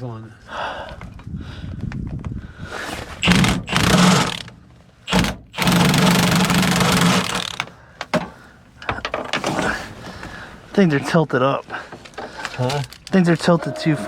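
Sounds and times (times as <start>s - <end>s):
power tool motor bursts: 3.2s - 4.5s, 5.1s - 7.7s.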